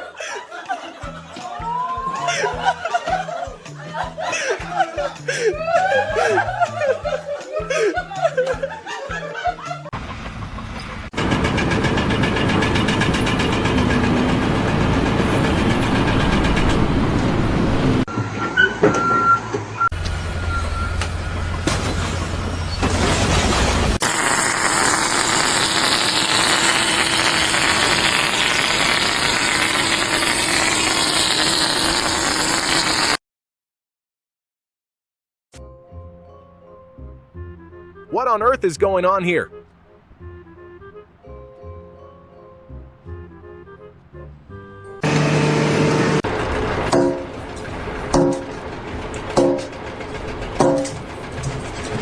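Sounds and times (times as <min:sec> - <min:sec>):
vehicle and machinery noise: 0:09.9 - 0:24.5, 0:45.0 - 0:52.0.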